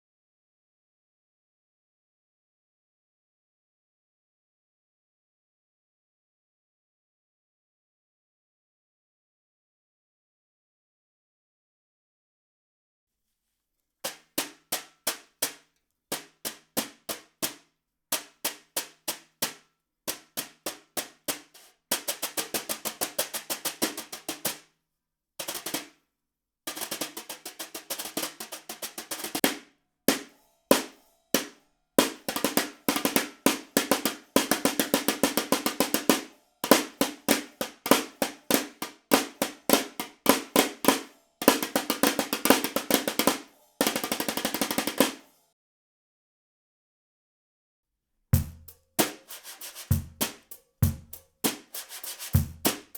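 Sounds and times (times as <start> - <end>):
snare drum playing: 20.2 - 24.6, 26.7 - 45.3, 48.4 - 52.9.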